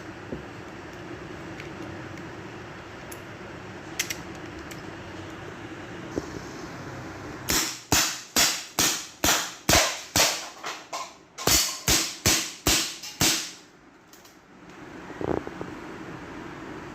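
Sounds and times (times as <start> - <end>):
pellet revolver shots: 7.5 - 10.4.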